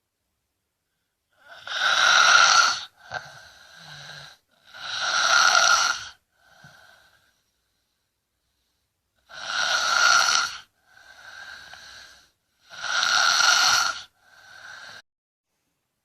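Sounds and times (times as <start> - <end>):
child snoring heavily: 1.3 - 7.4, 9.2 - 15.0.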